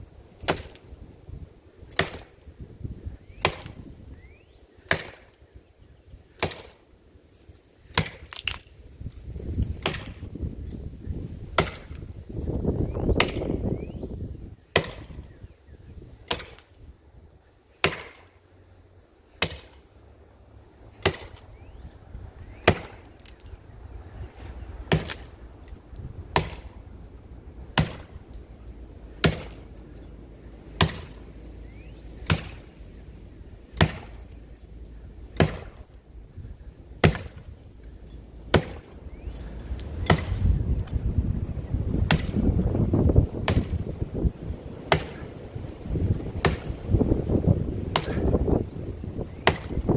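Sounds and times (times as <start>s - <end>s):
axe chopping wood: 0.4s - 0.8s, 1.9s - 2.4s, 3.4s - 3.9s, 4.8s - 5.3s, 6.4s - 6.8s, 7.9s - 8.7s, 9.7s - 10.3s, 11.5s - 13.7s, 14.7s - 15.2s, 16.2s - 16.7s, 17.8s - 18.3s, 19.4s - 19.8s, 20.9s - 21.5s, 22.5s - 23.4s, 24.9s - 25.4s, 26.2s - 26.8s, 27.7s - 28.2s, 29.2s - 29.8s, 30.7s - 31.2s, 32.2s - 32.7s, 33.7s - 34.2s, 35.3s - 35.9s, 37.0s - 37.5s, 38.5s - 38.9s, 39.8s - 40.9s, 42.0s - 42.5s, 43.4s - 43.8s, 44.8s - 45.4s, 46.3s - 46.8s, 47.9s - 48.5s, 49.3s - 49.9s.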